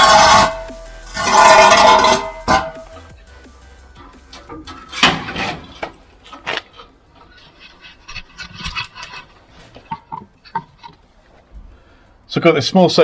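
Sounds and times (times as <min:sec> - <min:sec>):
scrape: 0:00.0 - 0:02.9, 0:05.0 - 0:05.7, 0:07.3 - 0:09.9
metal parts clicking and rattling: 0:04.3 - 0:11.0.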